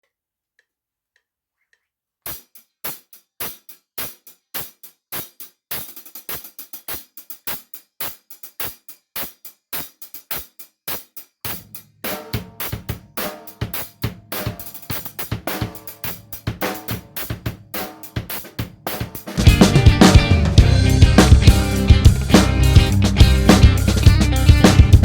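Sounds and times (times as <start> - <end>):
drum kit playing: 2.3 - 25.0.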